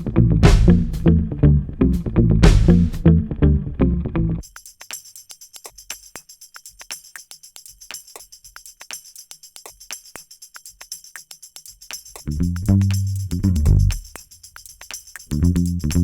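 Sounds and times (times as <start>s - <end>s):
tambourine-like jingle rhythm: 4.4s - 16.0s.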